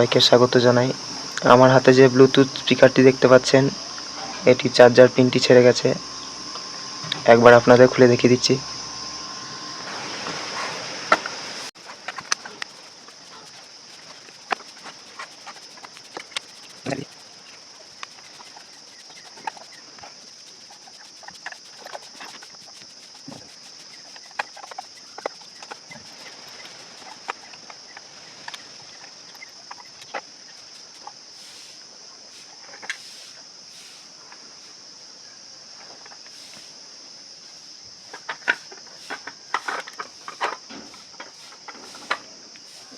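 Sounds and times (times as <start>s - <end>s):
high-pitched whine: 0.0s - 27.9s.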